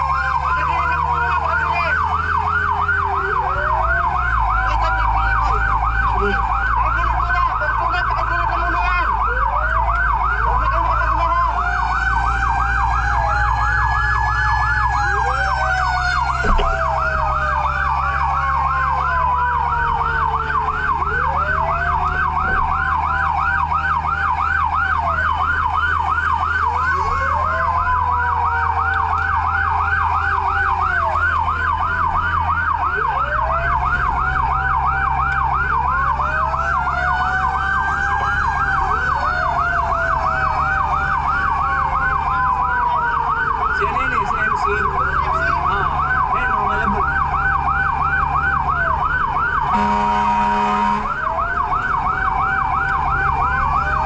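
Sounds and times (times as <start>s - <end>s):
fire truck siren yelping: 0.0s - 54.0s
wailing sirens: 0.0s - 54.0s
horn blast: 49.6s - 51.2s.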